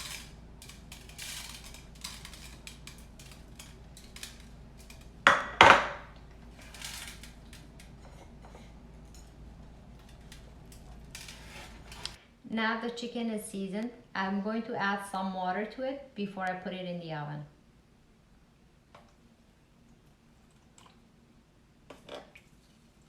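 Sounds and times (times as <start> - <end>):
utensils and dishes clinking: 0.0 - 12.2.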